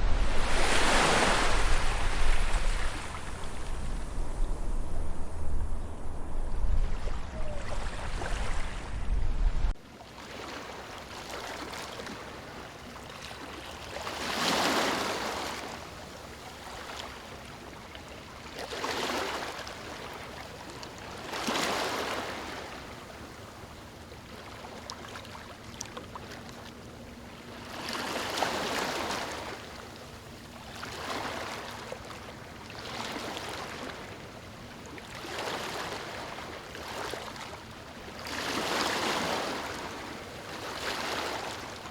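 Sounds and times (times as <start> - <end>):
loud deep rush of water: 0.0 - 9.8
small waves washing in: 0.0 - 41.9.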